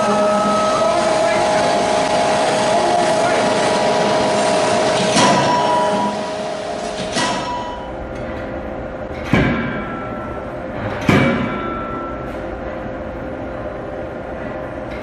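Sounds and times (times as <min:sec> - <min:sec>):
machinery hum: 0:00.0 - 0:15.0
forging hammer blows ringing: 0:05.1 - 0:06.4, 0:07.1 - 0:08.0, 0:09.2 - 0:12.4.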